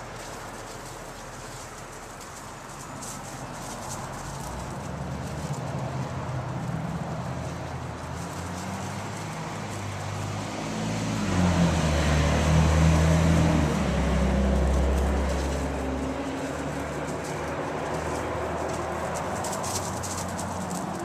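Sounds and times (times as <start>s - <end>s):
vehicle engine passing by: 0.0s - 21.0s.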